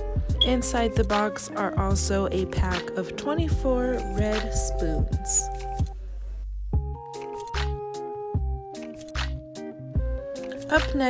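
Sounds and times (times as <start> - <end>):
instrumental music with drum beat: 0.2 - 6.0.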